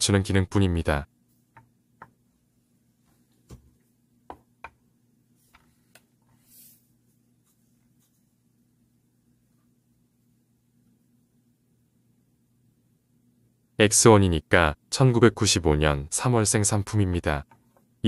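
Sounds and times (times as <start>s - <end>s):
soft brushing: 6.2s - 8.4s.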